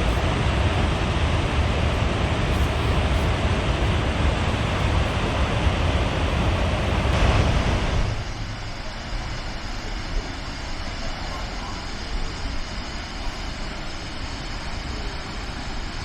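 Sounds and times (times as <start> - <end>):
waterfall rushing: 0.0 - 8.3
deep low rumble: 0.0 - 9.6.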